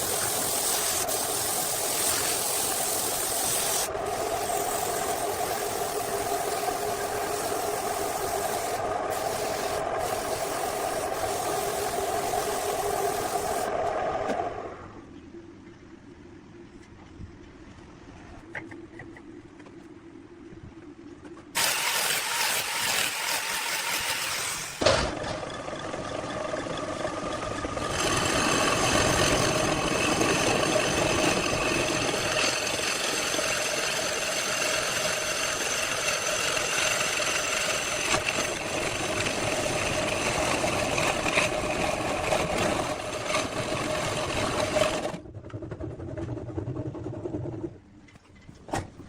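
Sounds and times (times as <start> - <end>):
power tool motor whine: 21.6 - 24.8.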